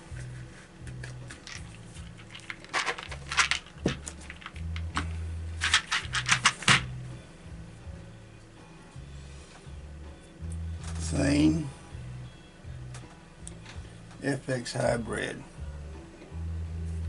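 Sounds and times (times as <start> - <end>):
low background music: 0.0 - 17.0
metal pellets rattling in tin: 1.4 - 5.0, 5.6 - 6.6.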